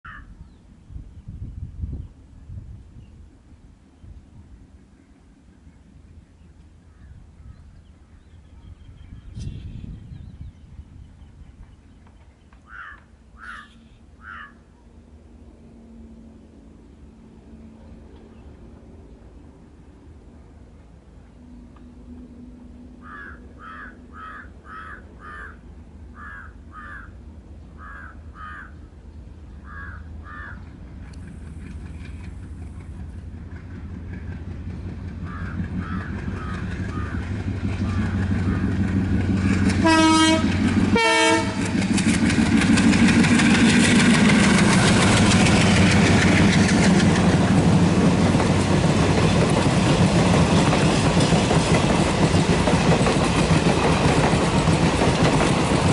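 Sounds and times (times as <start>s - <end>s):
diesel locomotive engine chugging: 14.8s - 55.9s
train wheels on rails: 30.1s - 55.9s
two-tone train horn honks: 39.8s - 41.8s.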